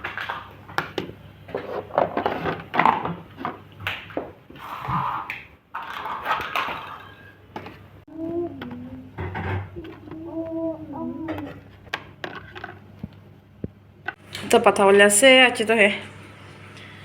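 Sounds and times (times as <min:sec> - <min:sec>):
cookware and utensils clattering: 0:05.8 - 0:07.8
low steady hum: 0:07.9 - 0:17.0.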